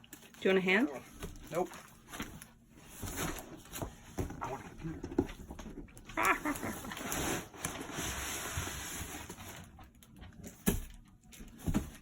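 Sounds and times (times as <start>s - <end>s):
cardboard and packing rustling: 0.0s - 12.0s.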